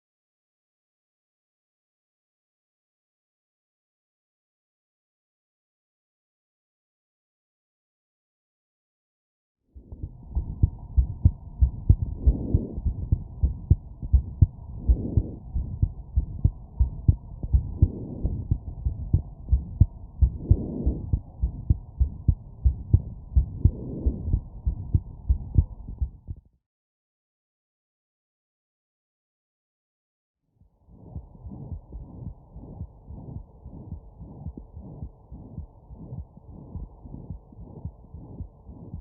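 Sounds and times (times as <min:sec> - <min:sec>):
heartbeats through stethoscope: 0:09.8 - 0:26.4, 0:30.6 - 0:39.0.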